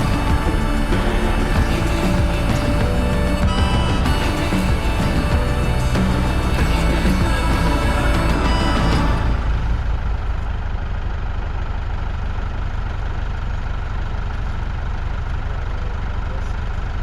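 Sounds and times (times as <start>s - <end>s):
background music: 0.0s - 10.4s
engine idling: 0.0s - 17.0s.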